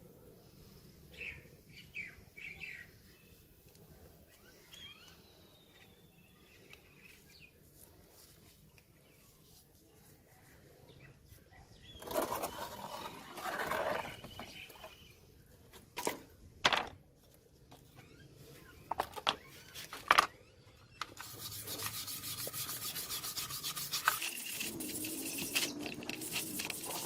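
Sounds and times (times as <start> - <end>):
fast even scrubbing: 21.2 - 27.0.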